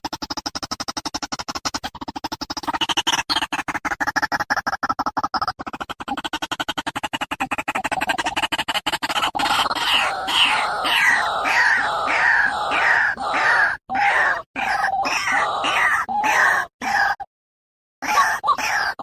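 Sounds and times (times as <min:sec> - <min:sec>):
waterhen croaking calls: 0:09.0 - 0:17.3.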